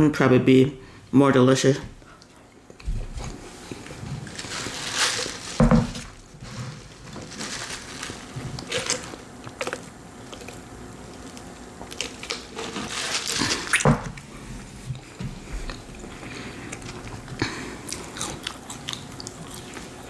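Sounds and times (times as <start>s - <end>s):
person chewing: 8.6s - 14.3s, 14.9s - 20.0s.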